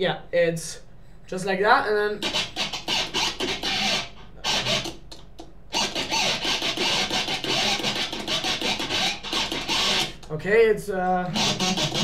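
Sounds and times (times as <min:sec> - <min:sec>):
choppy electric guitar scratching: 0:02.1 - 0:05.1, 0:05.8 - 0:10.2, 0:11.2 - 0:12.0.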